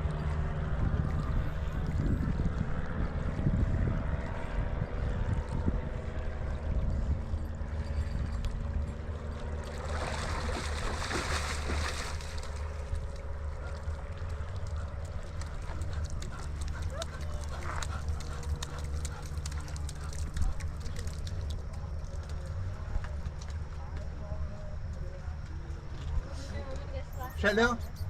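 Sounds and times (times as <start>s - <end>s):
steady low hum: 0.0s - 28.0s
river water lapping: 8.6s - 23.0s
water splashing: 9.6s - 14.9s.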